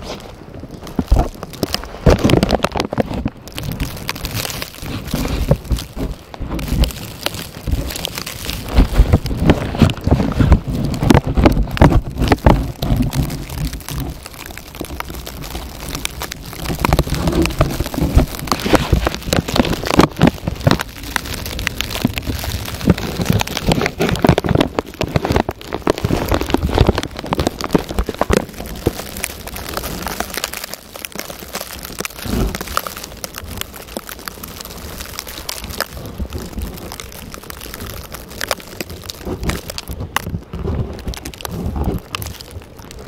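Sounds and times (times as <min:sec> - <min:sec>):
wind buffeting microphone: 0:00.0 - 0:15.1
snow pattering on microphone: 0:00.0 - 0:43.0.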